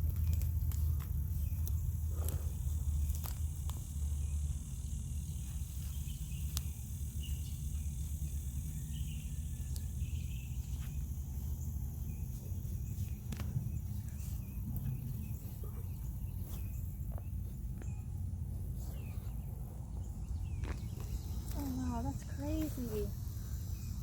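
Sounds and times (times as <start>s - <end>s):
insects chirring: 0.0s - 24.0s.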